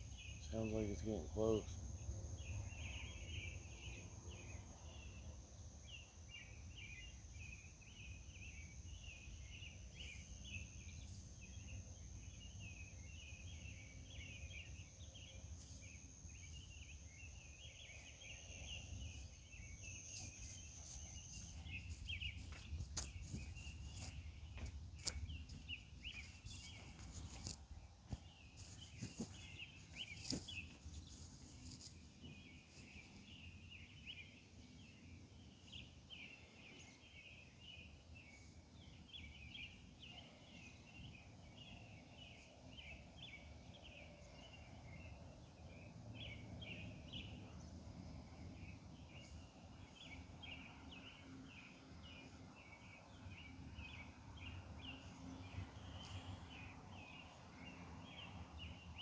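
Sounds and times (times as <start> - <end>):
insects chirping: 0.0 - 45.2.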